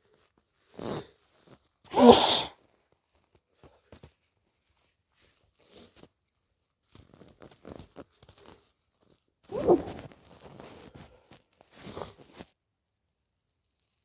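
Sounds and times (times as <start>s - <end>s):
soft crinkling and rustling: 0.0s - 1.9s, 2.6s - 14.0s
person sneezing: 1.9s - 2.6s.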